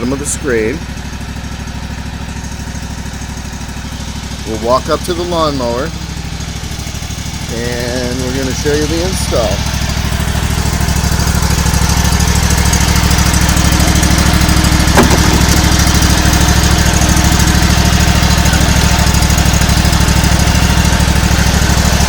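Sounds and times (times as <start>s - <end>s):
lawn mower engine running: 0.0s - 22.0s.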